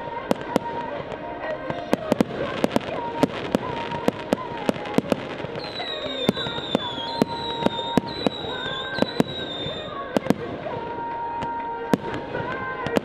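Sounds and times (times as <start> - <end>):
fireworks bangs: 0.0 - 13.0
fireworks whistling: 0.0 - 13.0
high wavering whistle: 4.8 - 12.5.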